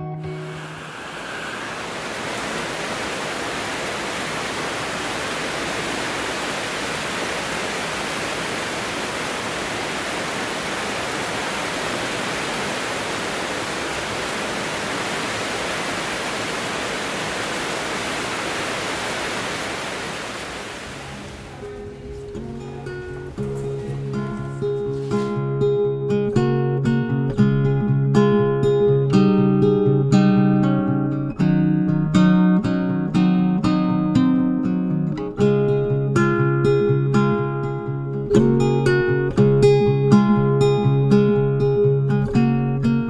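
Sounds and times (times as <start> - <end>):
steady rain falling: 0.2 - 25.5.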